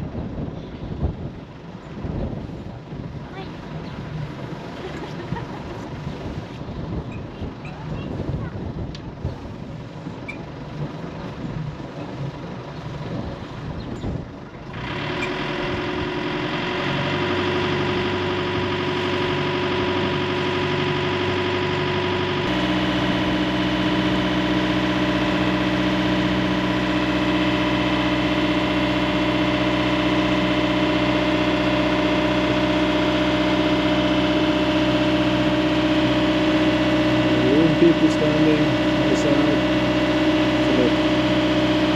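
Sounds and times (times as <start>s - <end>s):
wind buffeting microphone: 0.0s - 14.5s
boat engine running: 0.0s - 41.9s.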